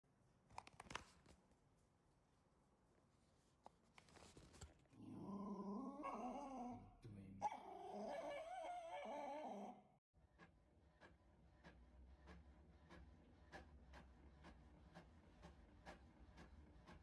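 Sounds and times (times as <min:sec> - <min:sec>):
dog howling calls: 0:05.6 - 0:09.9.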